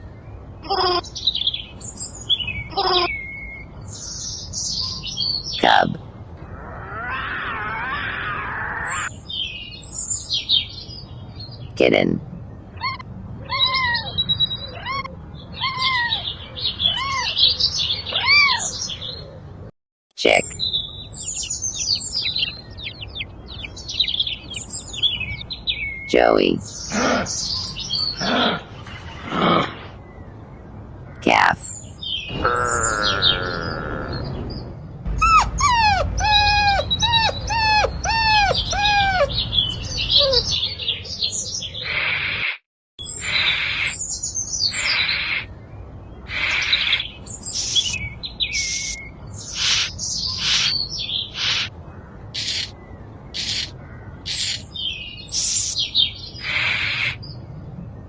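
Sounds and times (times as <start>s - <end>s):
birds chirping: 0.0s - 19.6s, 20.2s - 58.0s
dog whining yelps: 6.7s - 9.1s, 12.8s - 16.2s, 18.1s - 18.8s, 35.1s - 40.6s, 49.6s - 50.7s.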